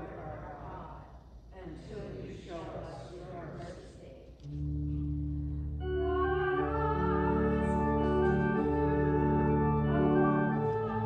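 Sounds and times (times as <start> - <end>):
church organ playing chords: 4.4 - 11.0.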